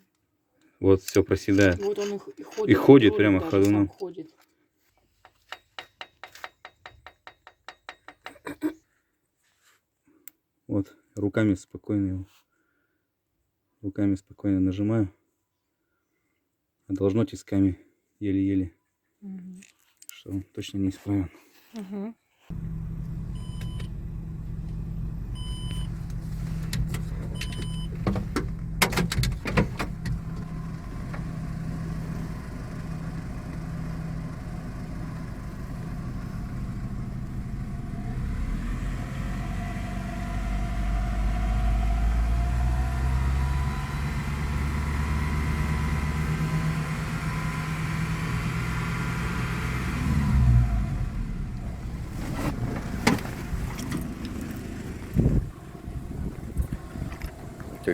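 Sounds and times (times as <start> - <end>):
petrol engine idling and revving: 22.5 - 57.9.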